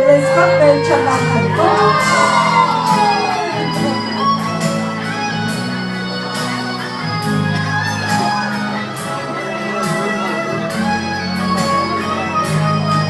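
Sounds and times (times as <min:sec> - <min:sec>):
guitar music with bass line: 0:00.0 - 0:13.0.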